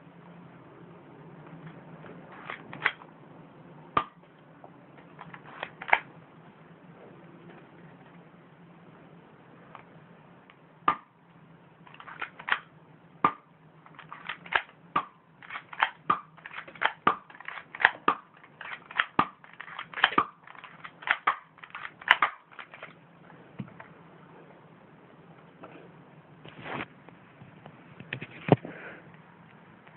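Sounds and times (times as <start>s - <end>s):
airsoft gun firing sharp cracks: 14.2s - 22.6s.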